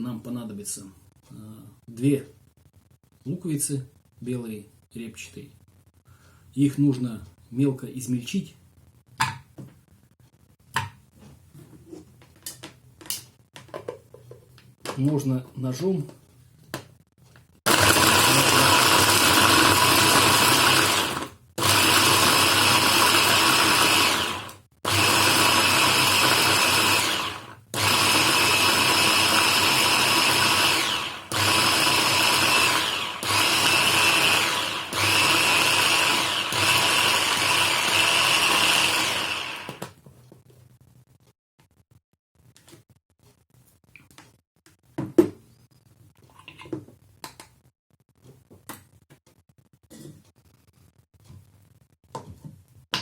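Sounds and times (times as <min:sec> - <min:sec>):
chopper motor running: 0:29.2 - 0:39.8.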